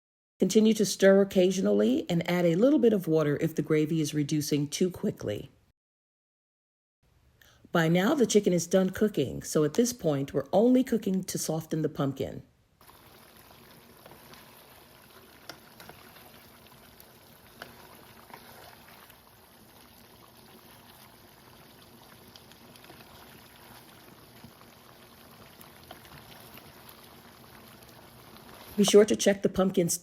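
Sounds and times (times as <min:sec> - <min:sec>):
stew bubbling in a pot: 0:12.8 - 0:29.6.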